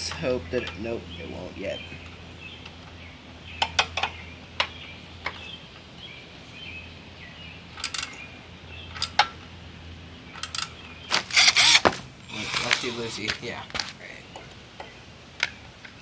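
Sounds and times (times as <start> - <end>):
hand tools clicking and tapping: 11.1 - 14.9.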